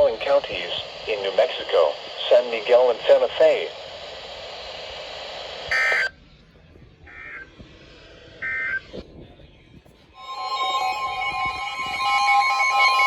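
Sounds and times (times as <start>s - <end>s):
steady radio hiss: 0.0s - 10.9s
steady tone with held pitches: 10.2s - 13.0s.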